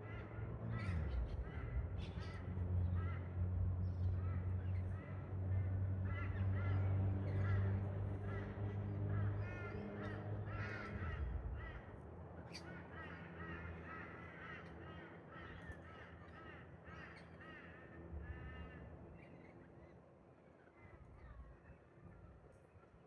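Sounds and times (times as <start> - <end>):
birds calling harshly: 0.0 - 20.0.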